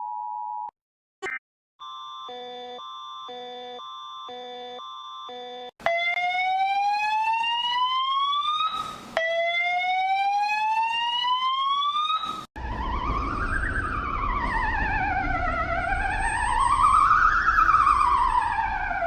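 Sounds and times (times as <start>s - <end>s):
trilling siren tone: 2.3s - 19.0s
rising whoop alarm tone: 5.9s - 19.0s.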